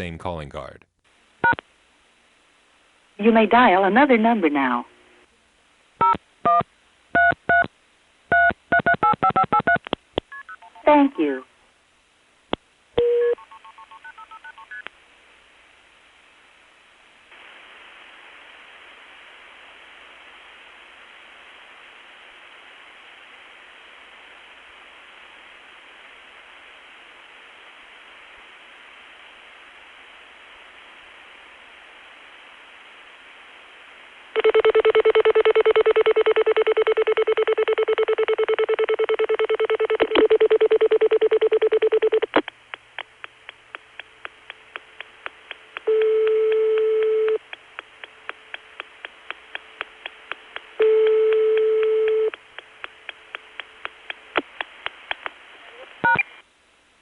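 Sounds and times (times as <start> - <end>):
telephone line hiss: 13.0 - 14.8, 34.3 - 42.4, 45.7 - 55.0.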